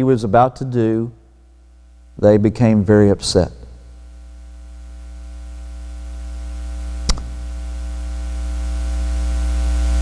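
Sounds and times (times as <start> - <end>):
electrical mains hum: 0.0 - 10.0
sharp click: 7.0 - 7.4.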